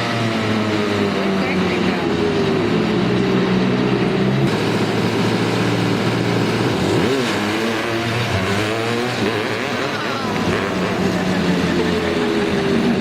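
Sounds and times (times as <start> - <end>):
small engine revving: 3.4 - 13.0.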